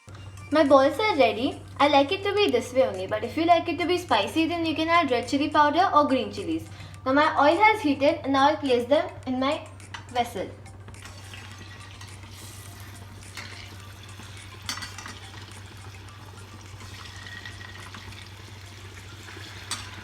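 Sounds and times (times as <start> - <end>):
food sizzling in hot oil: 10.9 - 20.0
utensil clinking on pot: 11.0 - 12.4, 13.2 - 15.7, 16.8 - 18.3, 19.3 - 20.0.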